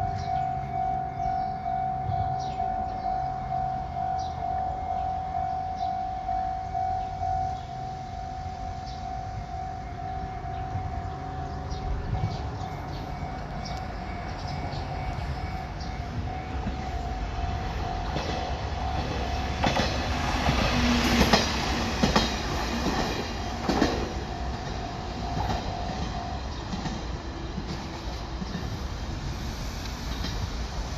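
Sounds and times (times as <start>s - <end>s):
level crossing warning bell: 0.0s - 20.6s, 23.6s - 27.0s.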